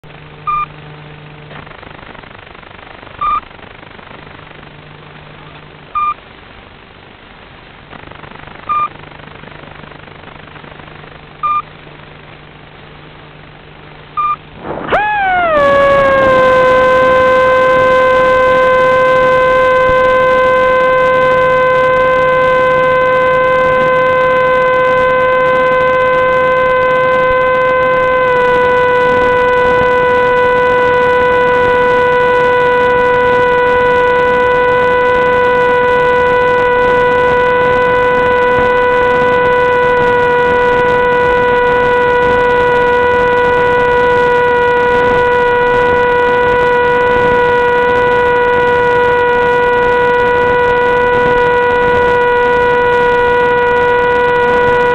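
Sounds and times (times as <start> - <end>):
low hum: 0.0 - 54.9
short beeps: 0.5 - 0.7, 3.2 - 3.4, 6.0 - 6.2, 8.7 - 9.0, 11.4 - 11.7, 14.2 - 14.5
small electric motor whine: 14.1 - 54.9.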